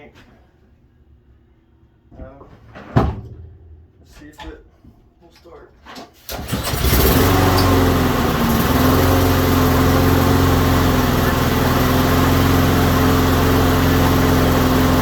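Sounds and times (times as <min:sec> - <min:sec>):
lawn mower engine running: 0:06.3 - 0:15.0.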